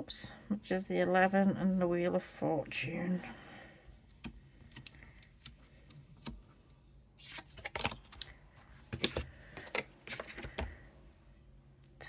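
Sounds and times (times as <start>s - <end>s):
cards shuffling snaps and rustles: 7.2s - 10.8s.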